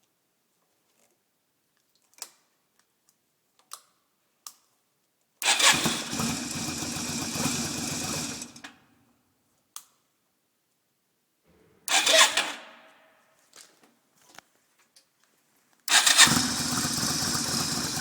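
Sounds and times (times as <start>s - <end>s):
motorcycle starter cranking: 5.4s - 8.7s, 11.9s - 12.7s, 15.9s - 18.0s.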